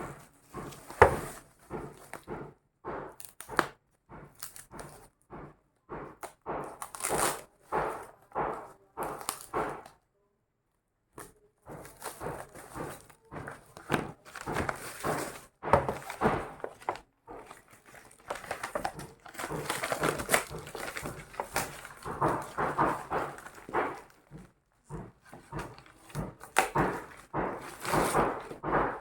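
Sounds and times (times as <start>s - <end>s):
packaging rustling and crinkling: 11.7s - 29.0s.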